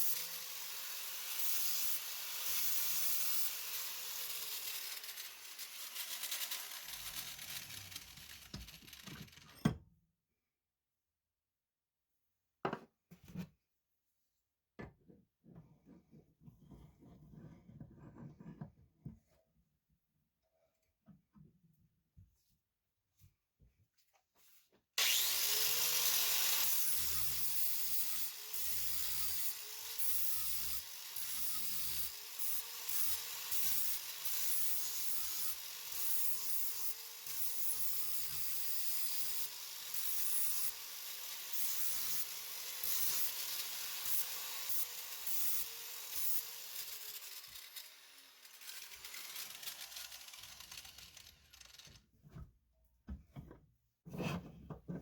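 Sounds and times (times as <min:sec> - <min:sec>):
power grinder on metal: 0:00.0 - 0:09.6, 0:25.0 - 0:52.0.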